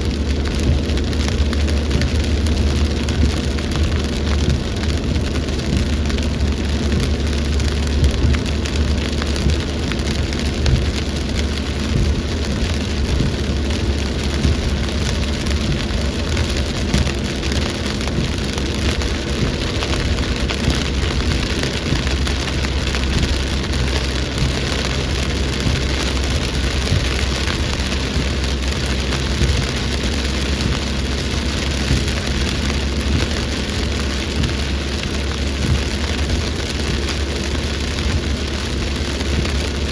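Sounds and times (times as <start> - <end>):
deep low rumble: 0.0 - 39.9
heavy rain pattering: 0.0 - 39.9.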